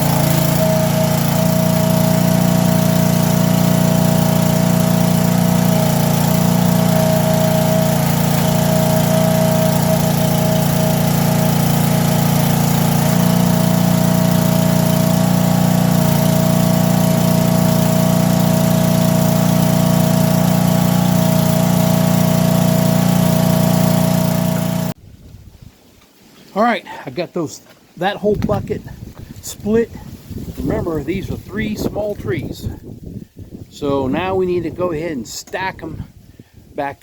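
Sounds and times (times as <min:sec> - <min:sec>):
log splitter gas engine running: 0:00.0 - 0:25.0.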